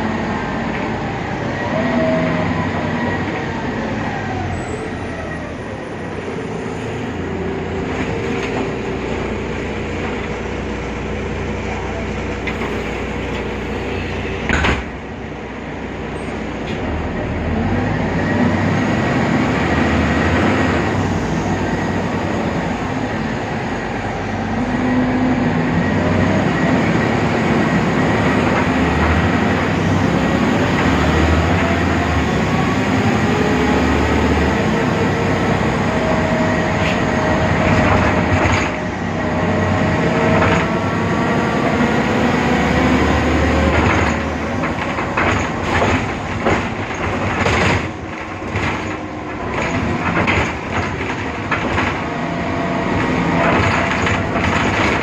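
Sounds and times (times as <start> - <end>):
bus engine running: 0.0 - 55.0
sharp rattles and knocks: 43.5 - 55.0.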